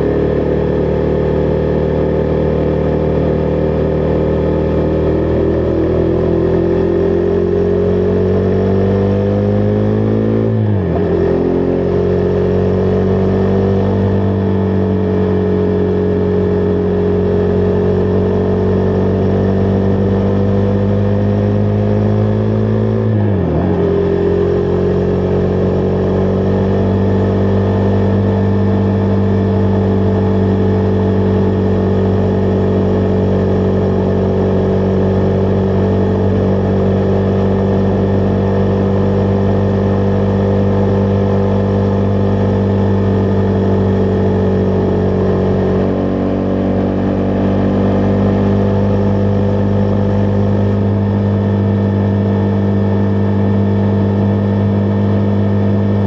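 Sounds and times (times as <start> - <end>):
motorcycle engine running: 0.0 - 56.0
wind and road noise: 20.3 - 56.0.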